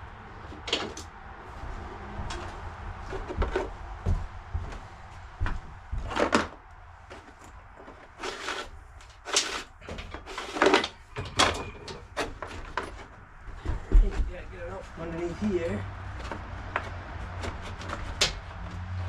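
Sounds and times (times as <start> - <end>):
parts clicking and knocking: 0.4 - 1.2, 5.4 - 13.3, 16.1 - 19.0.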